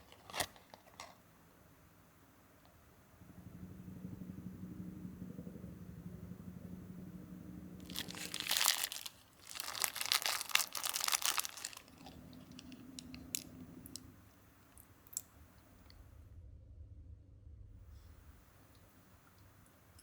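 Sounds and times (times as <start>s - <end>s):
food packaging crumpled and torn: 0.0s - 1.2s, 7.8s - 14.0s
low steady hum: 0.0s - 20.0s.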